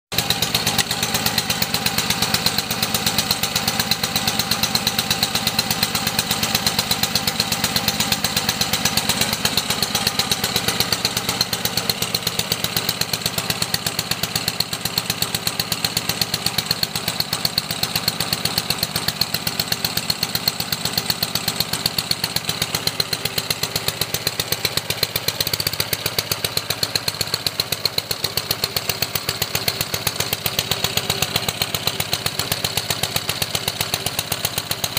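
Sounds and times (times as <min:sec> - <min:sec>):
pressure washer engine running: 0:00.1 - 0:34.9.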